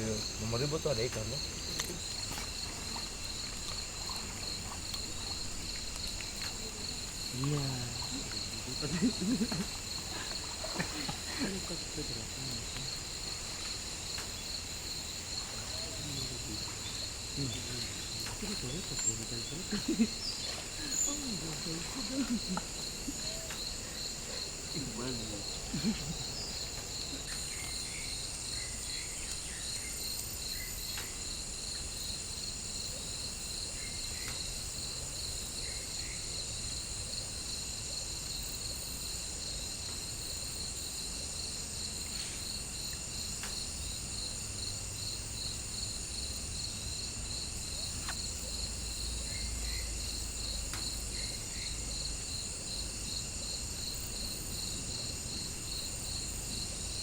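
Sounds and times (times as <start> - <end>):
insects chirring: 0.0 - 57.0.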